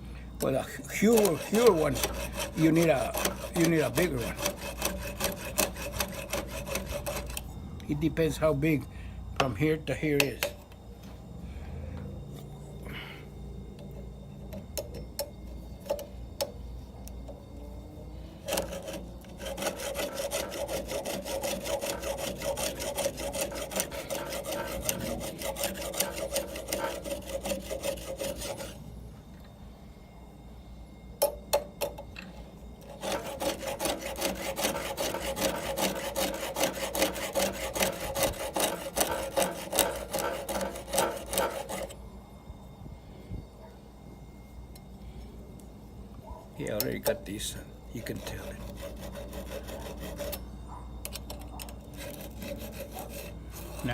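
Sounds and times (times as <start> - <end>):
file rasping on chainsaw chain: 0.4 - 7.6, 18.4 - 28.8, 32.8 - 42.0, 48.0 - 53.9.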